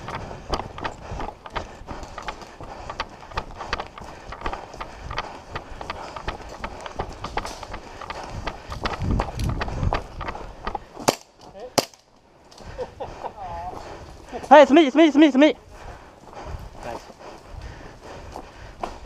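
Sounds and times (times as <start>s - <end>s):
gear clicking and knocking: 0.0s - 10.8s
running footsteps: 0.0s - 11.6s, 12.2s - 19.0s.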